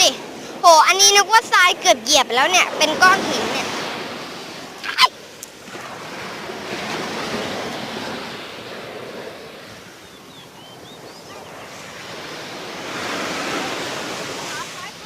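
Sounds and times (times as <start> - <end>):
sea surf washing ashore: 0.0 - 15.0.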